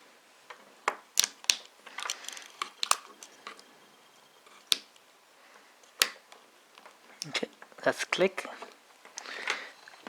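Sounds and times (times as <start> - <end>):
sharp clicks and light taps: 0.9 - 3.7.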